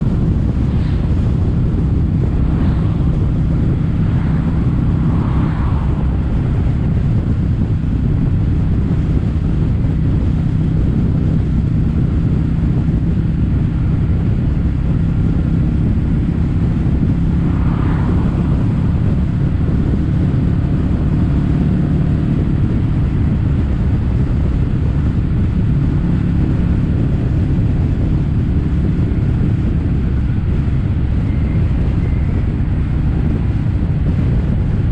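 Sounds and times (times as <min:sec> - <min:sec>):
motorcycle engine running: 0:00.0 - 0:34.9
wind on microphone: 0:00.0 - 0:34.9.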